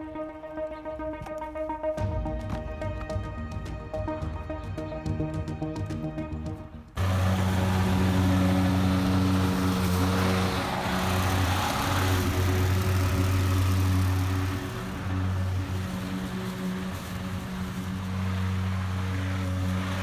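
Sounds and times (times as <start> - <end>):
lawn mower engine mowing: 7.0 - 20.0.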